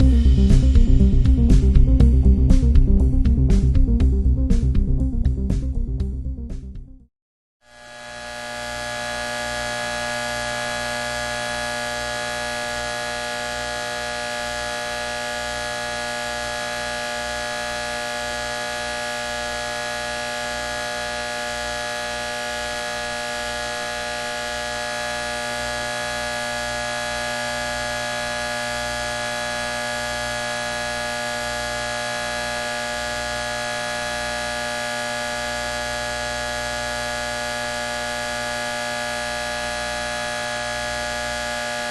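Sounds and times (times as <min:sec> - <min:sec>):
fluttering low pulse: 0:00.0 - 0:06.8
electrical hum and buzz: 0:07.7 - 0:41.9.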